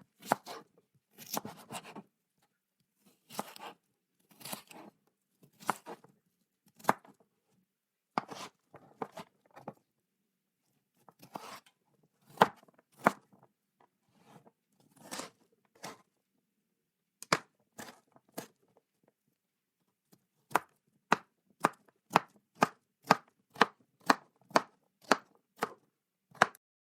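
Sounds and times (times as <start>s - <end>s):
knife chopping on wooden board: 0.2s - 0.6s, 1.2s - 2.0s, 3.3s - 3.7s, 4.4s - 4.9s, 5.5s - 6.0s, 6.8s - 7.2s, 8.2s - 9.3s, 11.2s - 11.6s, 12.3s - 13.2s, 17.2s - 18.5s, 20.5s - 26.6s.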